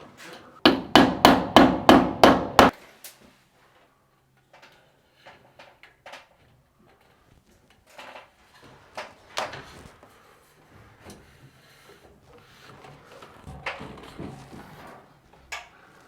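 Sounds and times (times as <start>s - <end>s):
building materials knocking and scraping: 0.3s - 2.8s, 10.7s - 16.0s.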